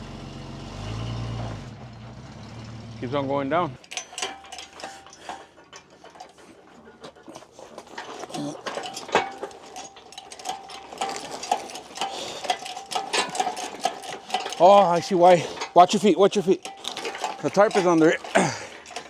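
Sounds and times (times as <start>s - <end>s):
jack being pumped clicking: 3.8s - 19.0s.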